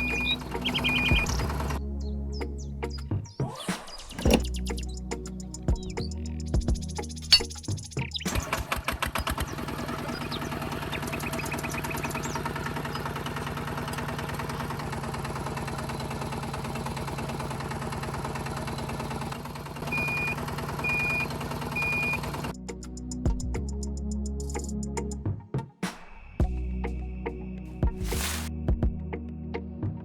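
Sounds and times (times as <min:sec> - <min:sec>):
tractor engine idling: 0:00.0 - 0:01.8, 0:08.3 - 0:22.6.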